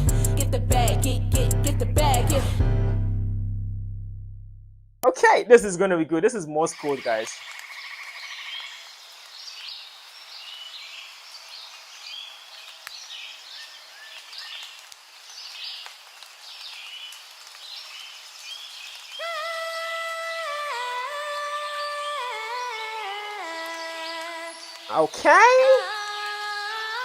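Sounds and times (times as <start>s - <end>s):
bird chirps: 6.7s - 20.0s
woman humming: 19.2s - 27.0s.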